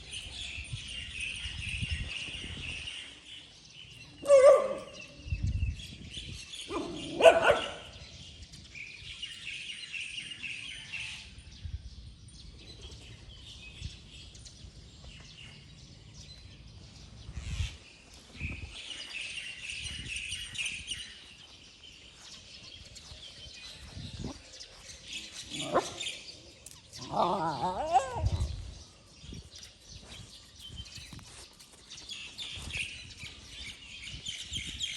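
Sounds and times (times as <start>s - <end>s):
puppy barking: 4.2s - 4.9s, 6.7s - 7.9s
small birds chirping: 12.0s - 34.9s.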